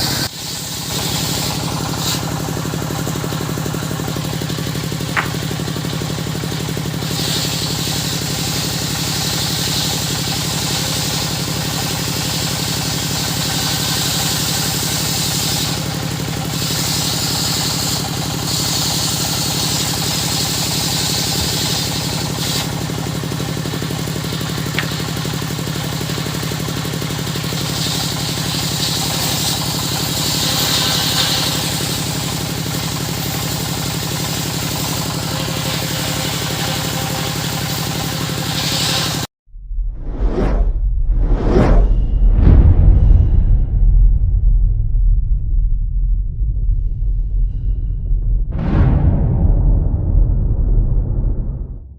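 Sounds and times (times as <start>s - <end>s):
saw blade cutting wood: 0.0s - 39.3s
circular saw humming: 0.0s - 39.9s.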